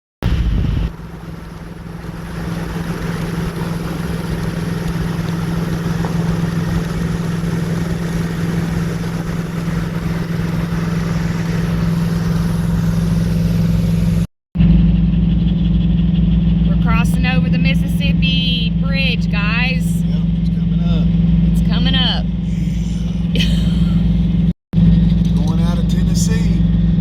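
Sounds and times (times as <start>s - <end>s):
wind noise: 0.2s - 14.2s
road noise: 0.2s - 27.0s
truck engine hum: 0.2s - 27.0s.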